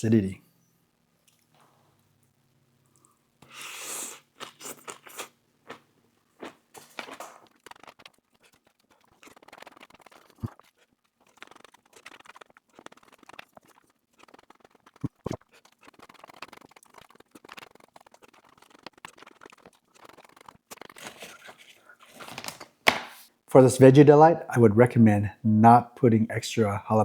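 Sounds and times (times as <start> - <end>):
chewing crunches: 2.9 - 22.6
crunchy bite into sandwich: 3.4 - 22.3
mouth clicks: 14.2 - 21.0.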